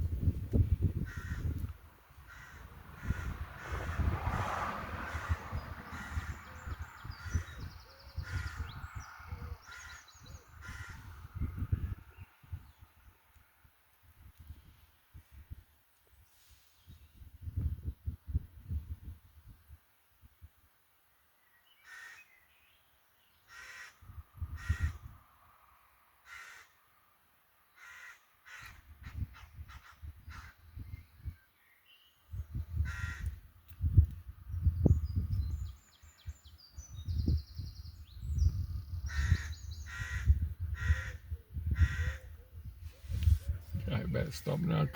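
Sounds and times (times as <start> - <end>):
crows cawing: 1.0 - 1.6, 2.2 - 4.1, 5.1 - 7.6, 8.2 - 8.8, 9.6 - 11.1, 21.8 - 22.3, 23.5 - 24.0, 24.6 - 25.1, 26.2 - 26.8, 27.7 - 28.8, 32.8 - 33.4, 39.1 - 42.4.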